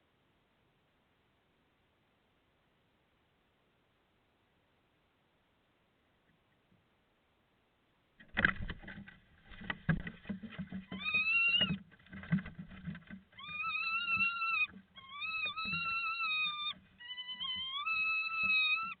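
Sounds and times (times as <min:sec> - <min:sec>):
owls scuffling in wooden nest box: 0:08.2 - 0:19.0.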